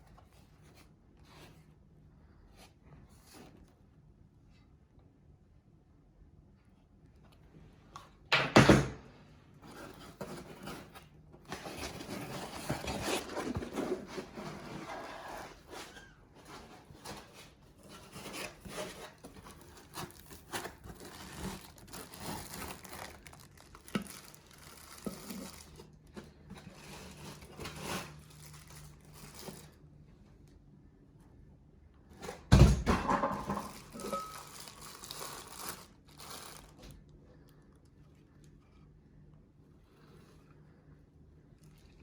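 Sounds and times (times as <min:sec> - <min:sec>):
packaging rustling and crinkling: 0:09.6 - 0:29.8, 0:33.3 - 0:37.1.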